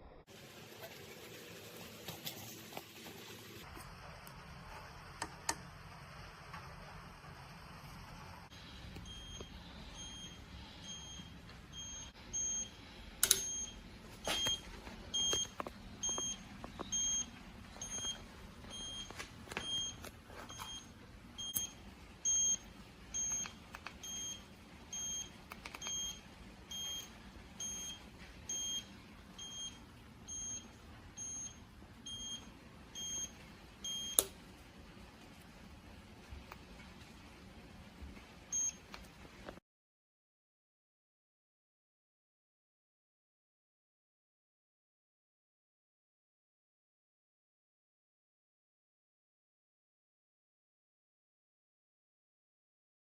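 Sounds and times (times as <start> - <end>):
high turn-signal beeps: 9.0 - 34.3, 38.5 - 38.8.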